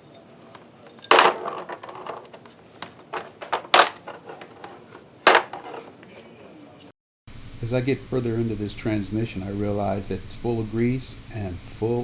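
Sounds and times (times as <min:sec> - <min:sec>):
metal tools clanking: 0:00.0 - 0:06.3.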